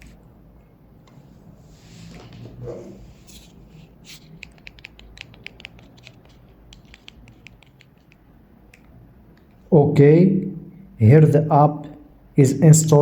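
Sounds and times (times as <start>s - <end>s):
low steady hum: 0.0s - 13.0s
light clicks and scratchy taps: 4.1s - 9.6s.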